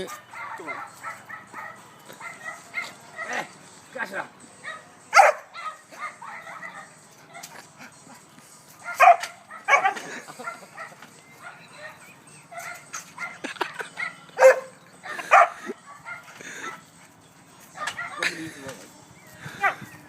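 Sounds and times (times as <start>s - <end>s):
dog barking: 0.1s - 3.5s, 4.6s - 7.6s, 8.8s - 13.4s, 14.0s - 16.4s, 17.8s - 18.3s.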